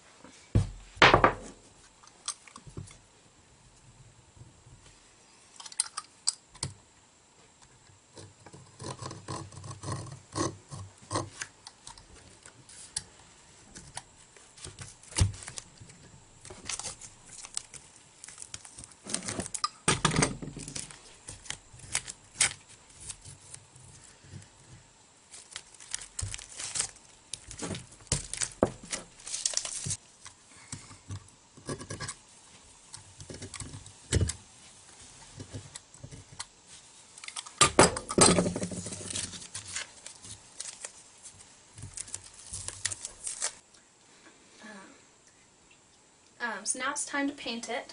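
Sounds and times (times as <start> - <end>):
rustling: 20.5 - 30.6, 38.4 - 43.6
masking tape ripping off roll: 20.6 - 23.6, 25.3 - 30.0, 41.9 - 43.6.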